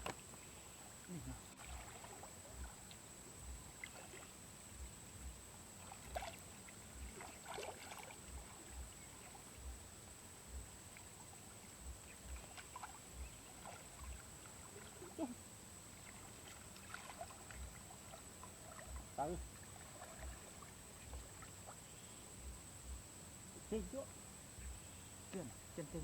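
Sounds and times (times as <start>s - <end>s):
shallow water sloshing and splashing: 0.0s - 23.0s
soft low thumps: 2.5s - 3.8s, 4.7s - 7.3s, 8.2s - 11.0s, 11.7s - 15.9s, 17.3s - 21.7s, 22.3s - 26.0s.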